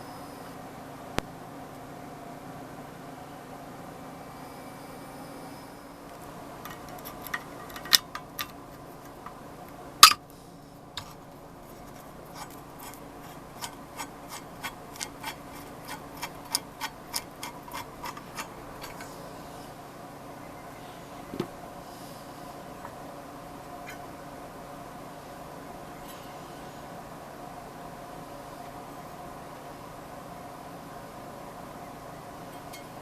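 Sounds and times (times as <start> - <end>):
faint steady hum: 0.0 - 33.0
tools clicking and tapping on metal: 6.6 - 9.4, 10.0 - 10.2, 11.0 - 11.2, 11.8 - 19.1.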